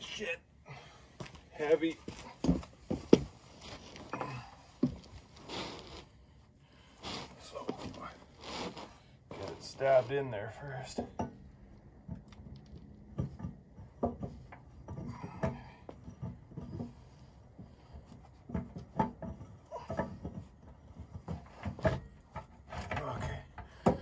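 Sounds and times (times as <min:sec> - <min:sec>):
metal clunks and scrapes: 0:07.0 - 0:24.0.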